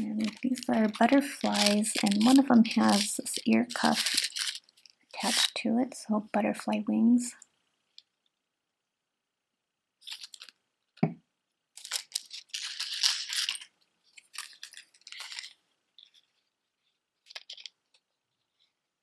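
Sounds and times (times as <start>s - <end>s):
earrings clinking: 0.0s - 5.5s, 11.8s - 16.2s, 17.2s - 17.8s.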